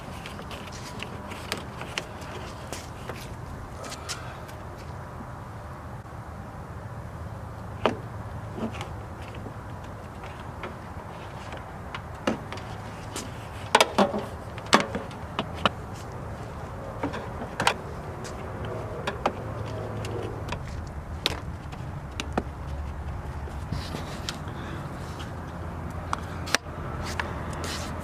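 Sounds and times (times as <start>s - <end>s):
low rumble: 15.8s - 27.5s.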